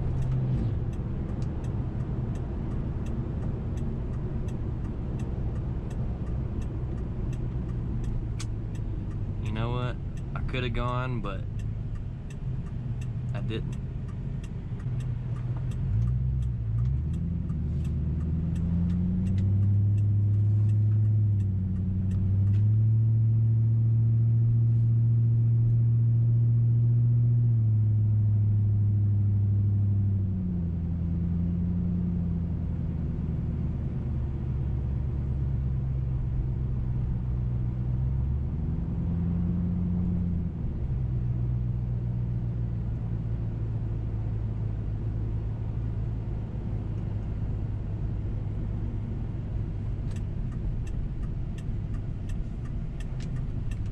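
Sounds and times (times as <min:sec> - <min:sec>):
car engine drone from inside: 0:00.0 - 0:53.9
light ticking: 0:00.1 - 0:22.5, 0:50.0 - 0:53.9.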